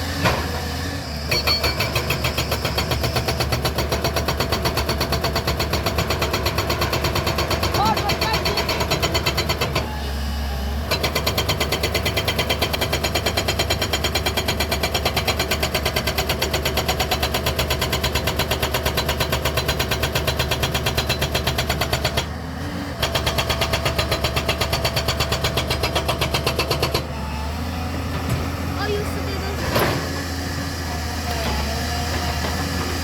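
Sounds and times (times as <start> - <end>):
hydraulic rock breaker hammering rock: 0.0 - 10.0, 10.9 - 22.4, 23.0 - 27.1, 27.9 - 33.0
diesel engine running: 5.3 - 12.2, 26.2 - 33.0.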